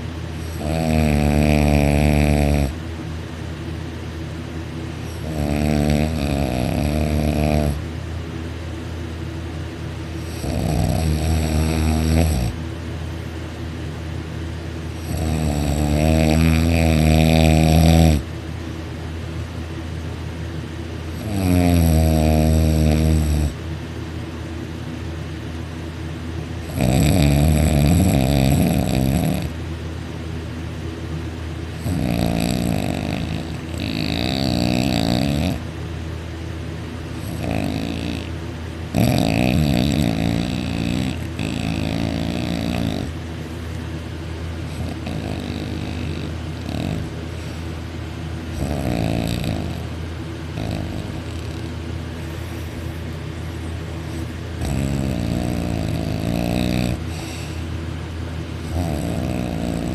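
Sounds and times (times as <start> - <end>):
person snoring loudly: 0.4 - 2.8, 5.1 - 7.8, 10.2 - 12.6, 15.0 - 18.3, 21.2 - 23.6, 26.7 - 29.6, 31.8 - 35.6, 37.2 - 38.3, 38.9 - 43.2, 44.7 - 47.6, 48.5 - 49.9, 50.5 - 51.8, 54.6 - 57.6, 58.6 - 59.9.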